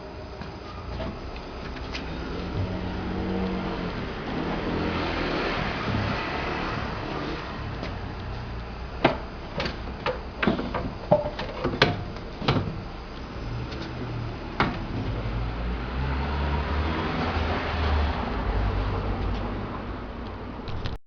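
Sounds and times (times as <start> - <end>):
steady low hum: 0.0 - 20.7.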